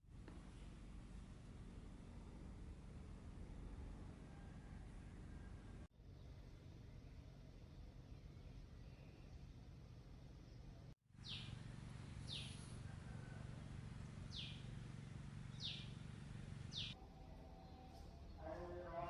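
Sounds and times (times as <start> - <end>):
steady low hum: 6.4 - 19.0
bird chirping: 11.2 - 11.6, 12.2 - 12.7, 15.5 - 16.0, 16.7 - 17.0.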